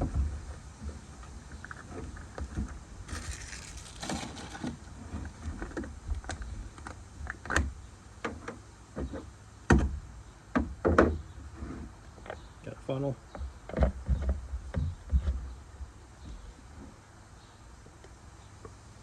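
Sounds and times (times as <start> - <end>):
brief rustle: 3.1 - 4.8.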